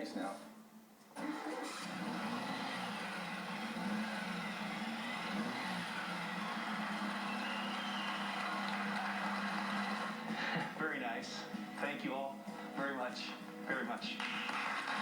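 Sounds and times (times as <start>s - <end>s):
air-cooled engine running: 1.2s - 8.1s.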